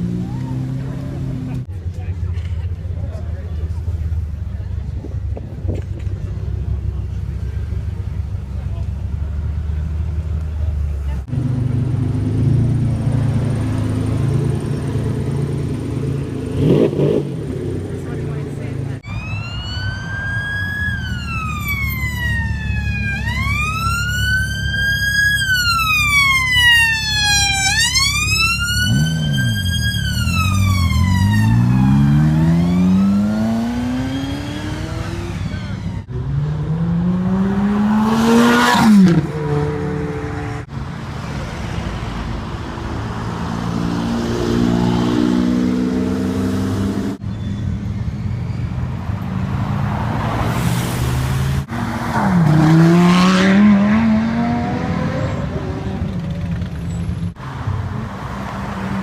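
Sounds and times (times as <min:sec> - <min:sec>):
sports car engines revving: 0:00.0 - 0:47.2, 0:47.8 - 0:59.0
siren wailing: 0:19.0 - 0:36.1.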